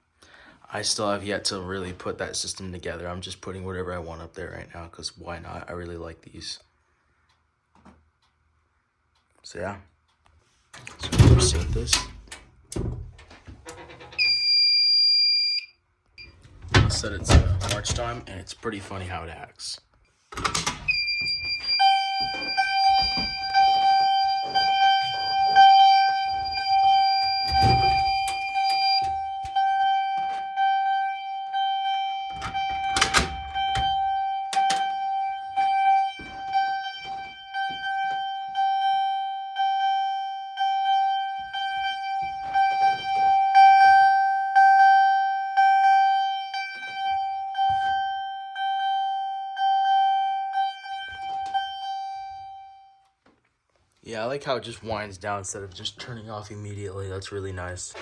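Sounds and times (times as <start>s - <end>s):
fire alarm chime pulsing: 13.7s - 18.2s, 20.4s - 53.1s
higher alarm tone: 14.2s - 18.3s, 20.5s - 53.0s.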